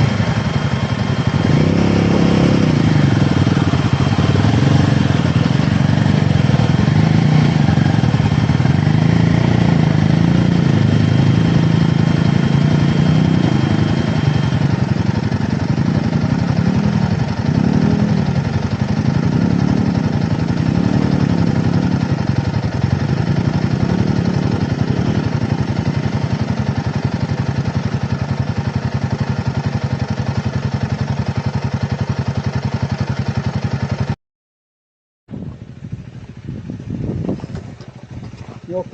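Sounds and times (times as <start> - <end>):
motorcycle engine running: 0.0 - 34.2, 35.3 - 38.9.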